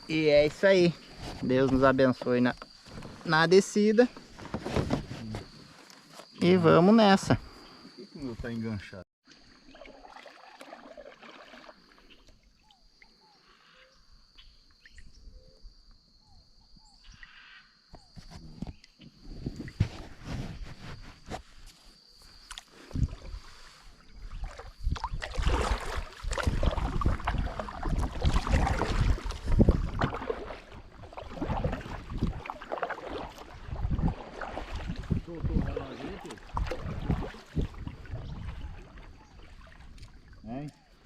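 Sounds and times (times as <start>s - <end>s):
paddle splashes: 0.1s - 6.9s, 9.2s - 13.2s, 22.4s - 41.0s
paddle knocking against hull: 24.5s - 40.1s.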